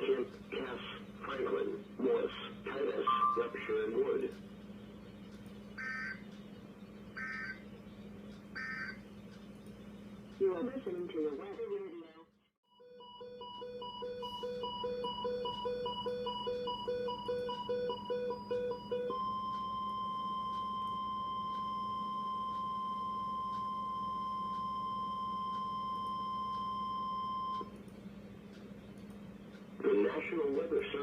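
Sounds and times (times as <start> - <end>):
low steady hum: 0.0 - 31.0
steady warning alarm tone: 3.0 - 10.8, 12.7 - 27.8
radio alarm beeping: 5.7 - 6.4, 7.1 - 7.8, 8.5 - 9.1, 12.8 - 27.8.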